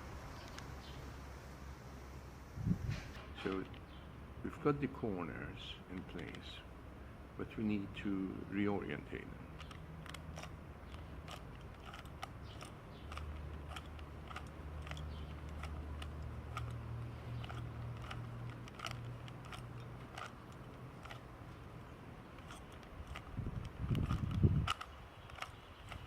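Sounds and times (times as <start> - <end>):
puzzle cube clicking: 9.6 - 21.4, 22.4 - 26.0.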